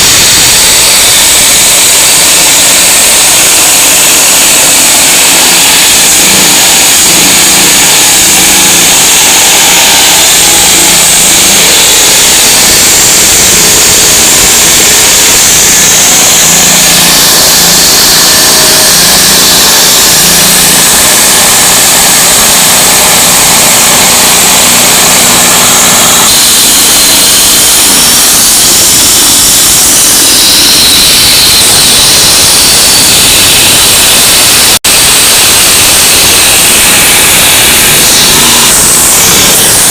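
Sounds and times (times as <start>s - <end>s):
construction machinery engine running: 0.0s - 39.9s
heavy hiss: 34.5s - 39.9s.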